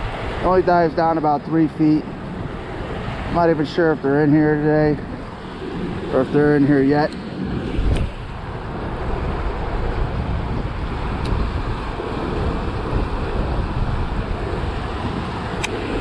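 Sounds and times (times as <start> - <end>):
wind buffeting the microphone: 0.0 - 16.0.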